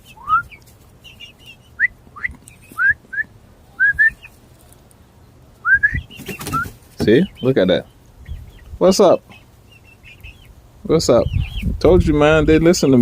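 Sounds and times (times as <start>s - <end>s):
high rising whistle-like calls: 0.0s - 0.6s, 1.4s - 4.3s, 5.6s - 6.8s.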